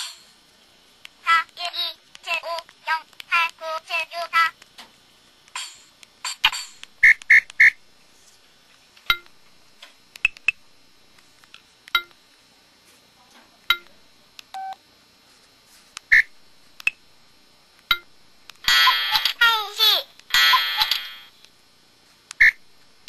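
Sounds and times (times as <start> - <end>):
mobile phone key beeps: 14.6 - 14.8.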